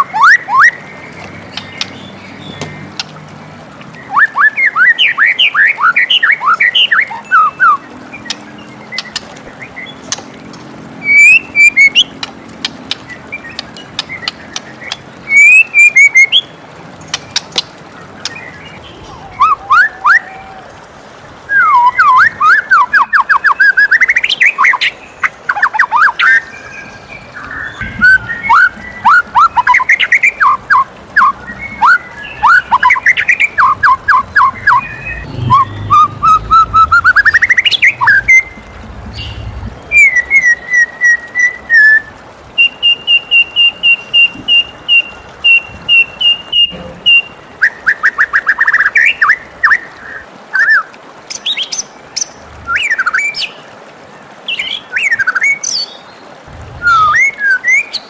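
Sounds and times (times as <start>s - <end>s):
bird singing whistled notes: 0.0s - 2.8s, 4.0s - 10.0s, 11.0s - 12.1s, 13.1s - 16.5s, 21.5s - 49.8s, 56.8s - 58.0s.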